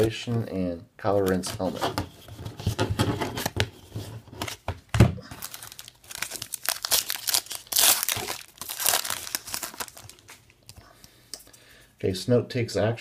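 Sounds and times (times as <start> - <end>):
wrapper ripping: 5.3 - 10.4
wrapper crinkling: 5.3 - 10.5.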